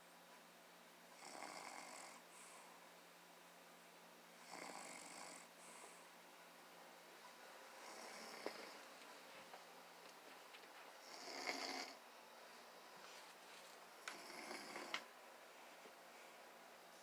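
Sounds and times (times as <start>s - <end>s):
faint snoring: 1.1s - 2.8s, 4.4s - 6.0s, 7.8s - 8.8s, 11.0s - 12.0s, 14.0s - 15.0s.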